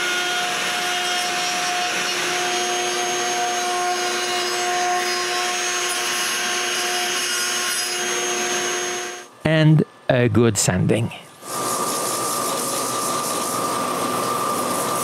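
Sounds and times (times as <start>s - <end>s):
router cutting wood: 0.0s - 9.3s.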